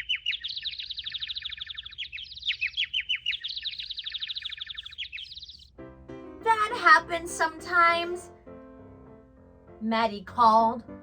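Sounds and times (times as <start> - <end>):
bird-like twittering: 0.0 - 5.7.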